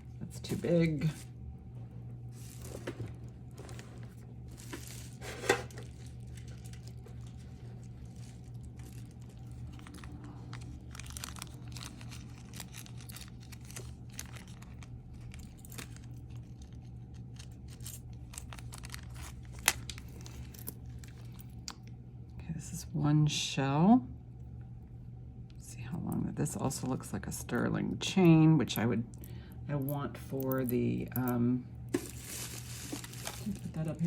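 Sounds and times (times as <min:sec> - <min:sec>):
steady low hum: 0:00.0 - 0:34.0
plastic baggies crinkling: 0:02.3 - 0:21.5, 0:31.9 - 0:34.0.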